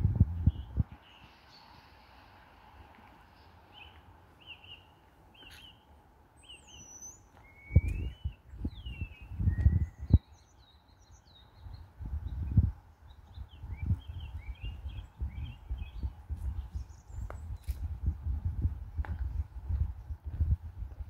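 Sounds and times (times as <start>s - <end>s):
birds calling and chirping: 3.2s - 17.9s
low rumbles and thumps: 17.2s - 21.0s.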